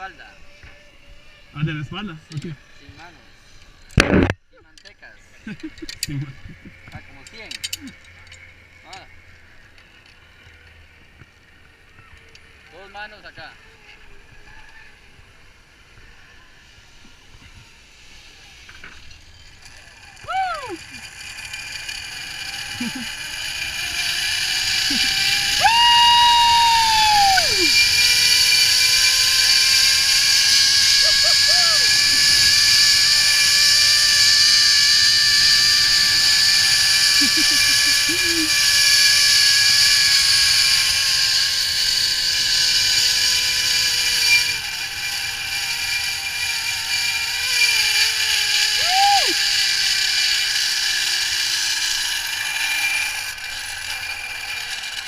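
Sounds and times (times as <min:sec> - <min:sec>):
zip-line pulleys whirring on cable: 0:00.0 - 0:04.3, 0:04.9 - 0:55.0
person shouting: 0:20.2 - 0:20.8, 0:24.9 - 0:27.8, 0:31.0 - 0:32.0, 0:48.8 - 0:49.4.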